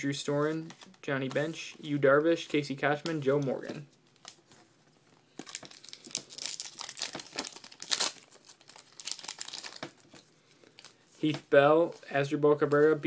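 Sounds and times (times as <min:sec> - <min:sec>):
plastic wrapper crinkling: 0:03.5 - 0:11.3.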